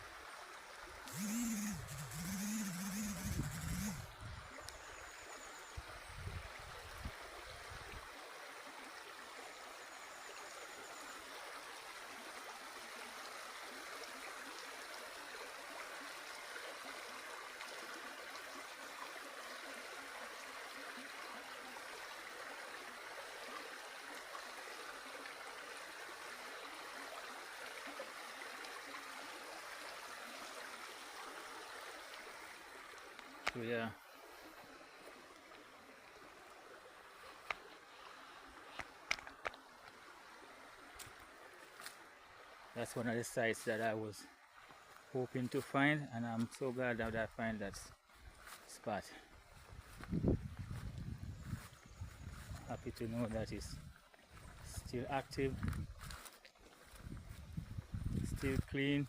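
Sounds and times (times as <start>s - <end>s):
stream water rushing: 0.0s - 59.0s.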